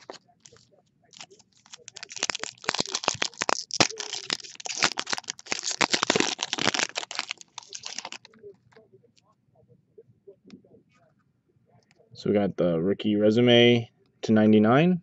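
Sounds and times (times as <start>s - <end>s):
wrapper crinkling: 0.0s - 8.4s.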